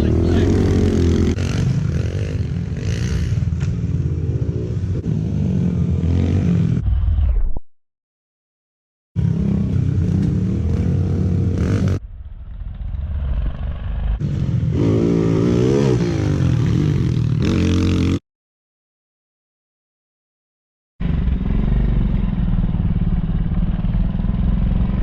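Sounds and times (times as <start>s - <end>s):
pit bike engines revving: 0.0s - 6.8s, 9.2s - 18.2s, 21.0s - 25.0s.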